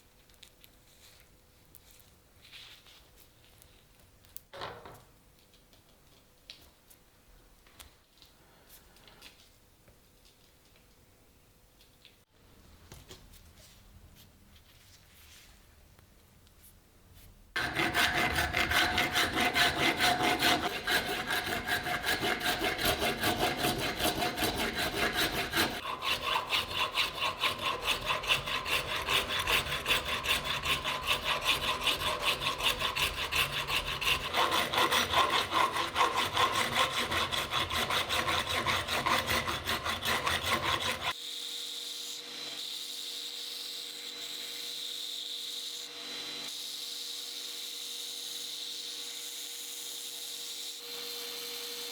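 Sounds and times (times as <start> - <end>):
rasping scrape strokes: 17.6 - 41.2.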